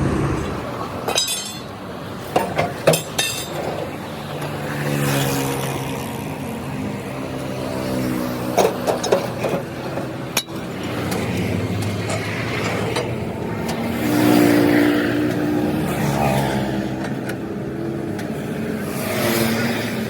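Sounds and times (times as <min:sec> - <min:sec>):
metal clinks and knocks: 0:01.1 - 0:01.8, 0:02.4 - 0:03.9.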